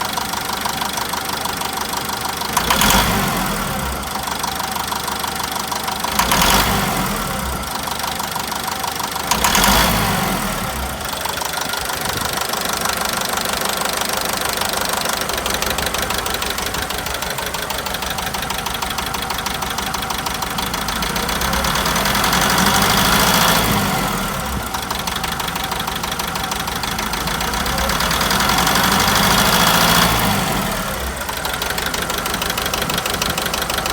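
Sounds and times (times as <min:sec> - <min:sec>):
diesel engine idling with knock: 0:00.0 - 0:33.9
engine revving: 0:02.5 - 0:04.6, 0:06.0 - 0:08.1, 0:09.3 - 0:12.4, 0:14.8 - 0:33.9.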